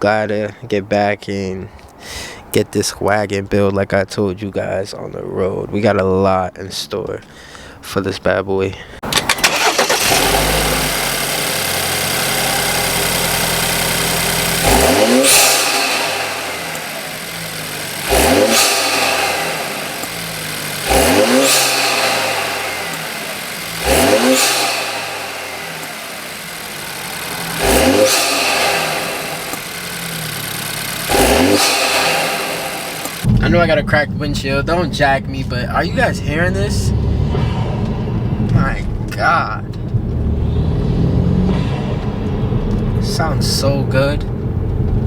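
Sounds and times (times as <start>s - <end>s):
car engine starting and idling: 9.0s - 45.0s
engine revving: 9.2s - 45.0s.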